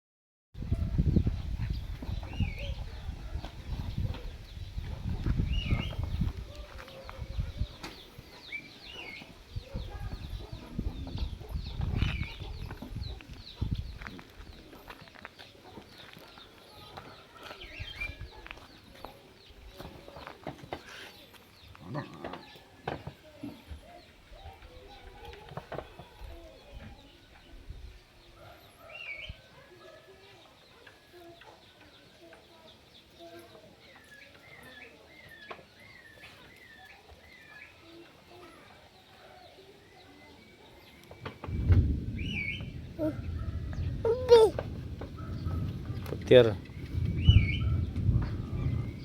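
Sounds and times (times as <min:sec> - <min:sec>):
birds chirping: 0:01.0 - 0:27.5, 0:28.2 - 0:49.0
low rumbling thumps: 0:41.4 - 0:49.0
animal chirps and calls: 0:42.2 - 0:44.6.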